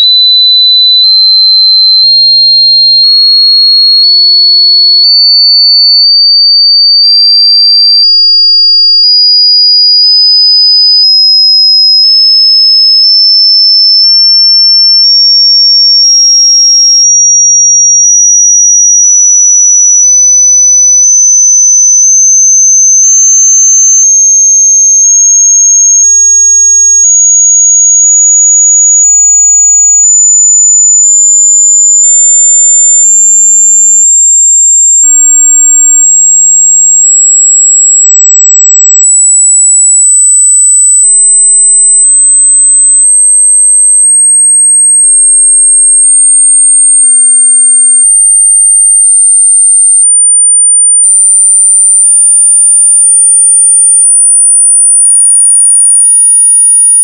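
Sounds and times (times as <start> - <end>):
high sine-wave test tone: 0.0 - 57.0.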